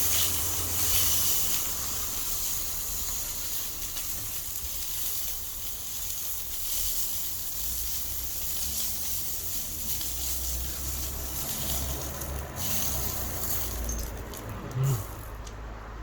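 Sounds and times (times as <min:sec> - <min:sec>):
steak sizzling in a pan: 0:00.0 - 0:10.8.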